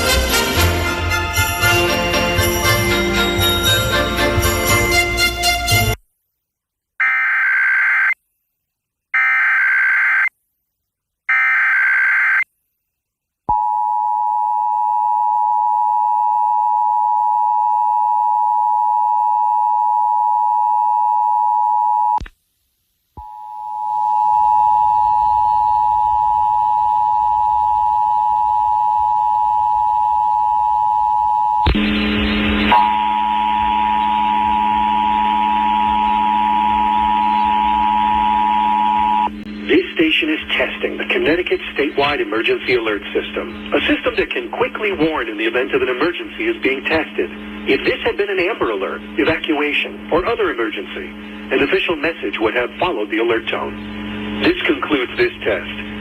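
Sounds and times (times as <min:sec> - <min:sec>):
hum: 0:13.5 - 0:56.0
two-tone attention signal: 0:32.7 - 0:39.3.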